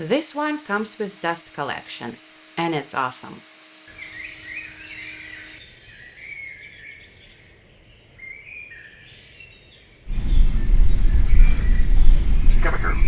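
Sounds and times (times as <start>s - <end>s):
birds chirping faintly: 10.1s - 13.0s
loud low rumble: 10.1s - 13.0s.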